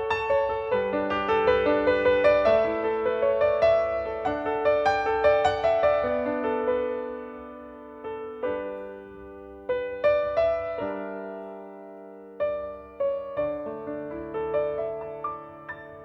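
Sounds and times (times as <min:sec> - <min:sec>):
slow piano music: 0:00.0 - 0:16.0.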